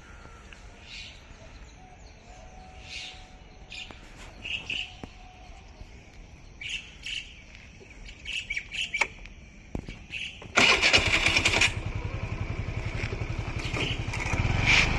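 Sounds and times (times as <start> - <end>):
birds chirping: 0.0 - 14.5
small engine running: 10.6 - 14.9.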